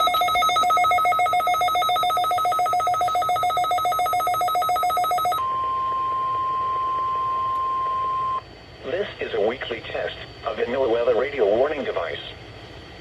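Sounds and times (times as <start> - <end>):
steady alarm tone: 0.0 - 8.4.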